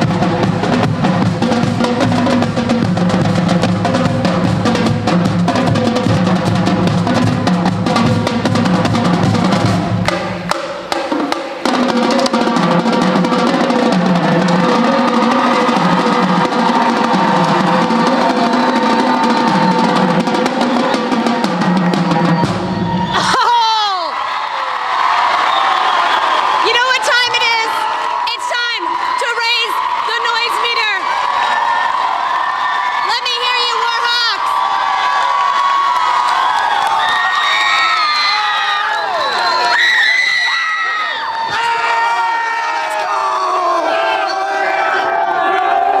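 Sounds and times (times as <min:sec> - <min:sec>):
snare drum rolls: 0:00.0 - 0:23.4
bass drums: 0:00.0 - 0:23.5
tenor drums: 0:00.0 - 0:24.1.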